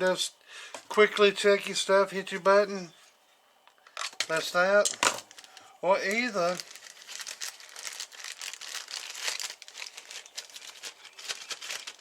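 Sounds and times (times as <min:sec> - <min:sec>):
packaging crinkling: 0:03.9 - 0:12.0.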